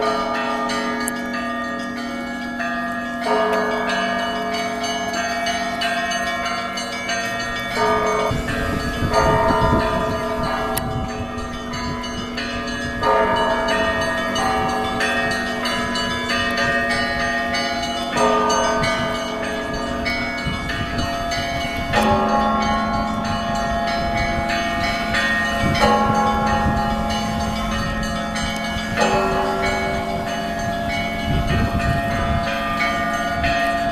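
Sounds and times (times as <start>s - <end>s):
church bells pealing: 0.0s - 33.9s.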